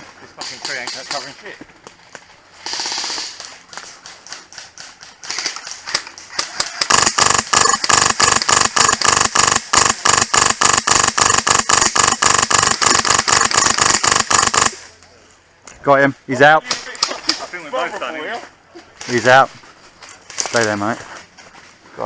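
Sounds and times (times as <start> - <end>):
airsoft rifle firing rapid shots: 2.6 - 3.4, 6.8 - 14.8.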